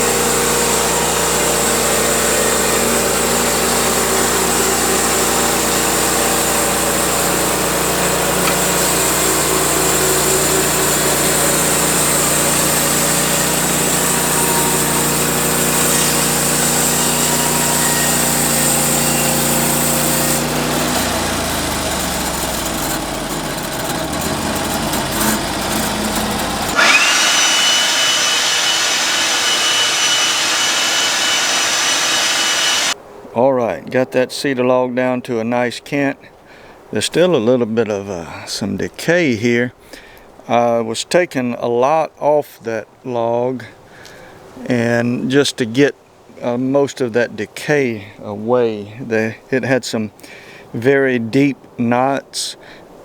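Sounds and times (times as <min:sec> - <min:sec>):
sawmill engine running: 0:00.0 - 0:33.0
steady high whine: 0:20.0 - 0:33.0.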